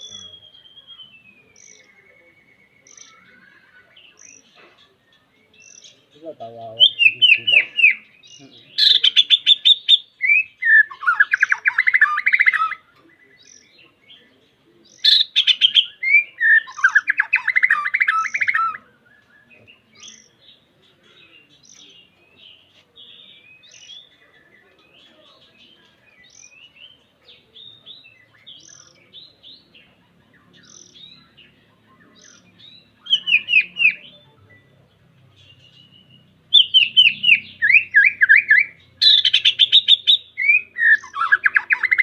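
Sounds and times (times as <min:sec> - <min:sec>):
bird singing whistles and trills: 0:00.0 - 0:03.3, 0:06.7 - 0:13.8, 0:14.9 - 0:20.4, 0:30.3 - 0:34.8, 0:35.6 - 0:42.0.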